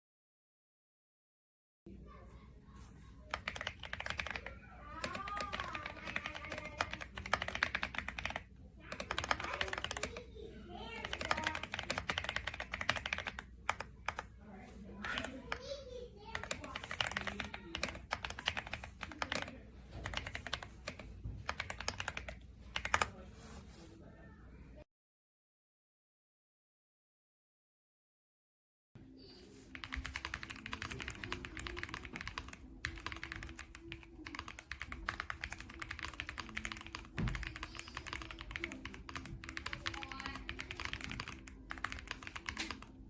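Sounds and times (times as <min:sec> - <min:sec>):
mechanical keyboard typing: 0:03.3 - 0:10.2, 0:11.0 - 0:14.3, 0:15.0 - 0:15.6, 0:16.3 - 0:23.1, 0:29.7 - 0:43.0.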